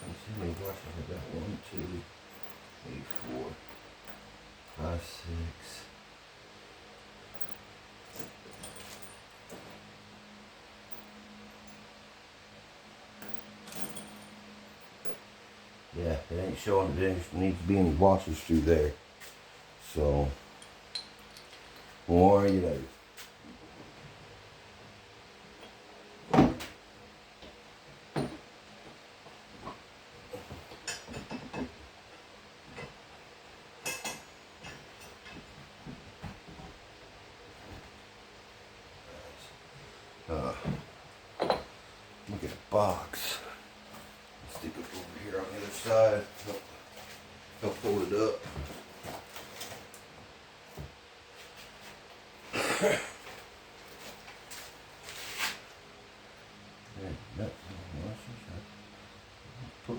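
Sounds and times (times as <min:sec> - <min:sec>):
metal hardware clinking: 0:00.0 - 0:04.8, 0:07.3 - 0:09.8, 0:13.2 - 0:15.2, 0:20.6 - 0:22.6
man coughing: 0:52.5 - 0:53.2.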